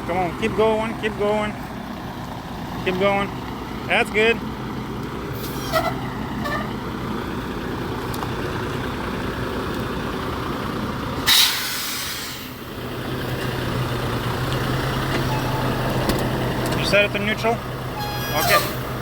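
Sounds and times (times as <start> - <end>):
diesel truck engine idling: 0.0 - 19.0
air brake hiss: 11.3 - 12.6, 18.0 - 19.0.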